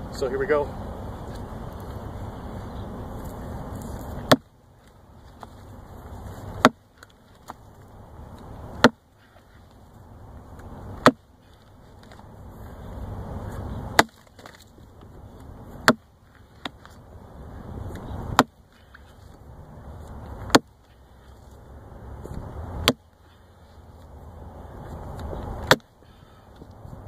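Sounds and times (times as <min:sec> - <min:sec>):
splitting maul cracking wood: 0:03.8 - 0:05.6, 0:06.6 - 0:07.7, 0:10.9 - 0:12.2, 0:13.9 - 0:15.1, 0:15.8 - 0:17.0, 0:17.9 - 0:19.2, 0:20.1 - 0:21.0, 0:25.2 - 0:25.9.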